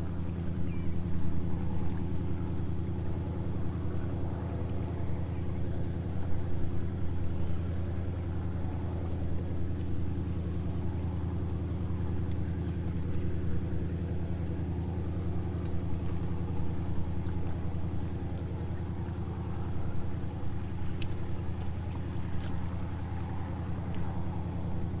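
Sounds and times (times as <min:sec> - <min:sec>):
engine idling: 0:08.0 - 0:25.0.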